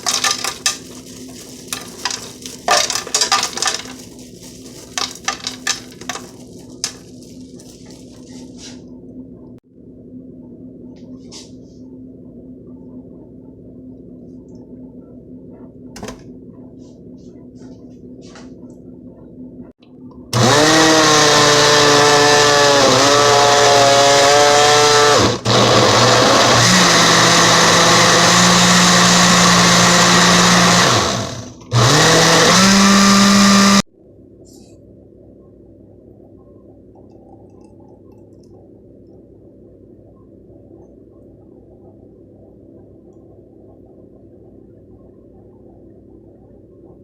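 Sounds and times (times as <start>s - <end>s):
blender running: 20.4s - 33.9s.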